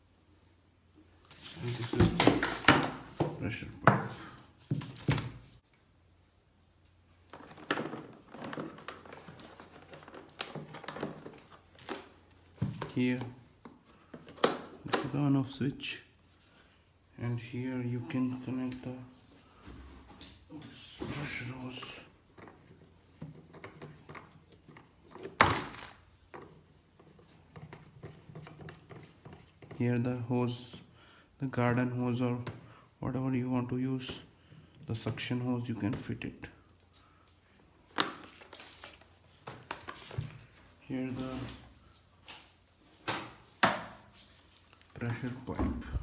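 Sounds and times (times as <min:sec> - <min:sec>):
plastic parts knocking and rubbing: 0:01.3 - 0:05.5, 0:07.2 - 0:14.9, 0:21.1 - 0:29.8.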